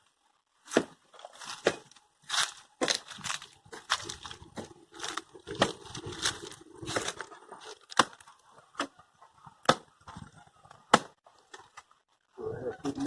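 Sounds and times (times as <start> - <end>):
hoe crunching into dried clay: 0.7 - 8.4
hoe scraping: 1.1 - 9.4.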